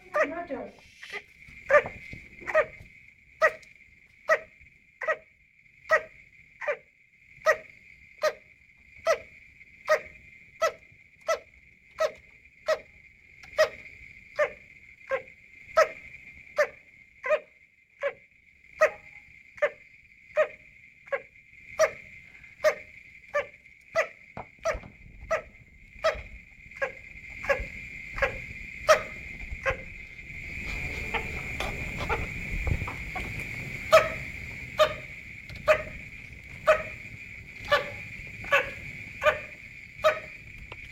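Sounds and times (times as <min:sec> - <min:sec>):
rough noise: 0:27.2 - 0:38.8.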